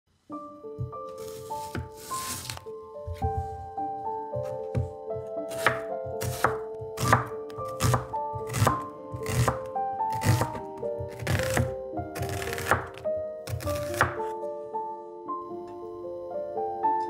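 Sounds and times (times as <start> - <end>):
background music: 0.1 - 17.0
knife cutting on a cutting board: 5.5 - 14.2.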